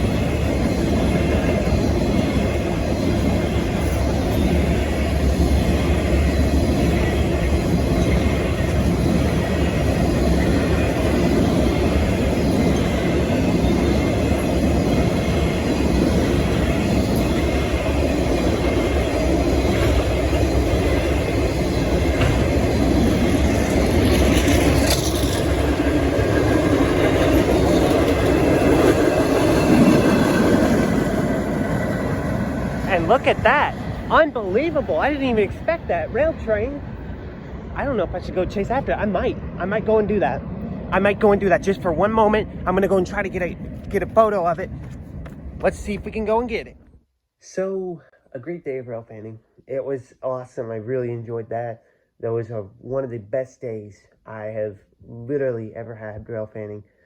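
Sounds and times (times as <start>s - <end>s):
train wheels rumbling on track: 0.0s - 47.0s.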